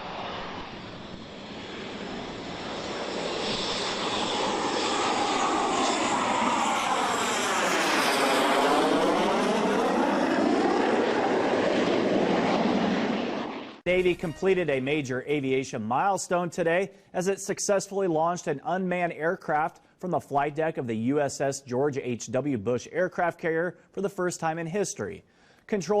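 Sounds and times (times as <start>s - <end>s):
jet aircraft flying past: 0.0s - 13.8s.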